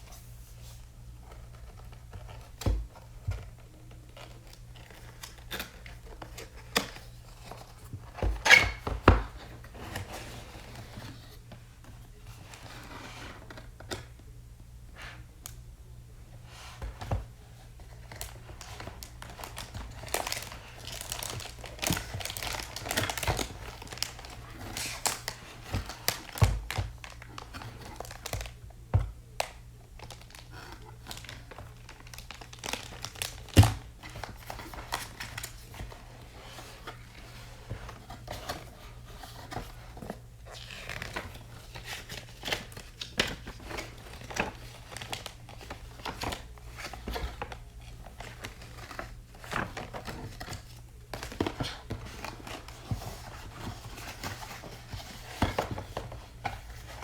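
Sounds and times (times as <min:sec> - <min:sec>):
packaging crinkling and rustling: 0:00.1 - 0:14.1, 0:16.4 - 0:57.0.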